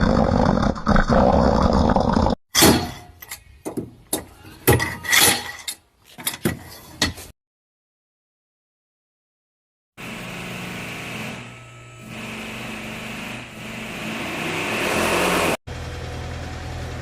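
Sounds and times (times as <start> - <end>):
engine running: 10.0 - 17.0.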